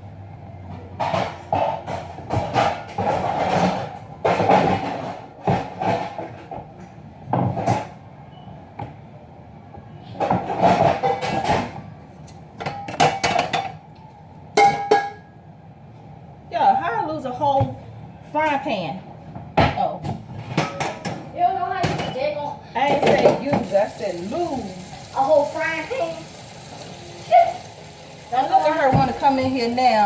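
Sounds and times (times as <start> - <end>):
pots and pans clattering: 0.9 - 6.6, 10.2 - 12.0, 12.6 - 13.8, 14.6 - 15.3, 19.6 - 21.2, 22.8 - 30.0.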